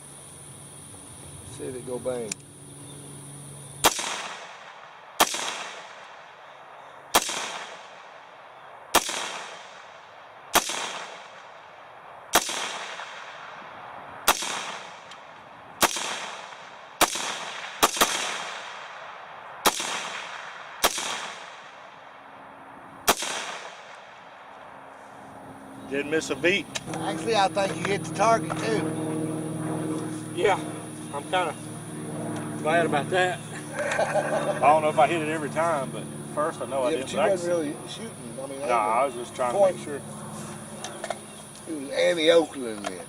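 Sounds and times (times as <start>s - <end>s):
rifle shots with echo: 3.8s - 11.7s, 12.3s - 22.2s, 23.0s - 24.5s.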